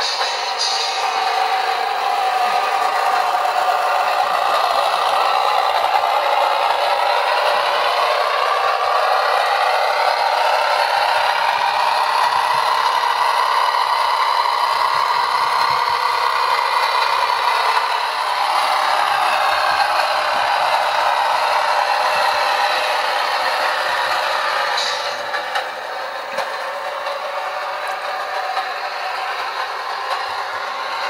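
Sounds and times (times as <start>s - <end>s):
diesel train engine through small speaker: 0.0s - 31.0s
model train clattering on track: 0.0s - 31.0s.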